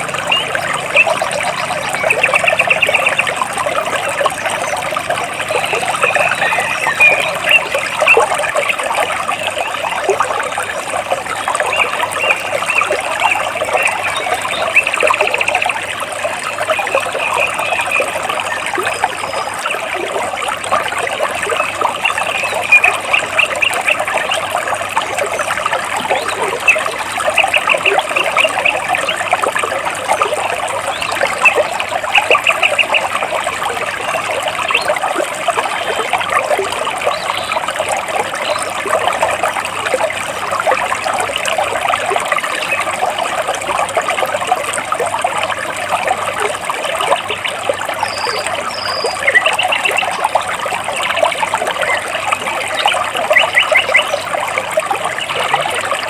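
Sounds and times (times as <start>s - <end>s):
stream babbling over rocks: 0.0s - 56.0s
bird trilling: 32.2s - 33.1s, 52.8s - 54.2s.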